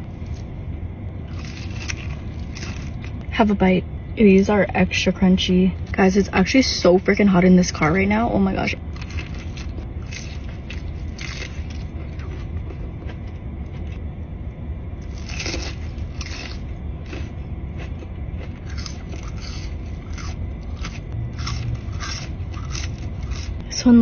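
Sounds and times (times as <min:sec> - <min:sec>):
steady low hum: 0:00.0 - 0:24.0
crunchy chewing: 0:01.2 - 0:03.3, 0:08.8 - 0:23.7.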